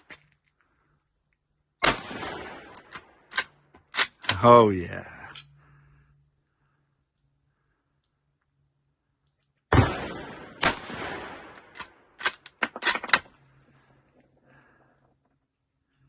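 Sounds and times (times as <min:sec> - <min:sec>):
rifle shot: 0:01.8 - 0:03.2, 0:09.7 - 0:12.1.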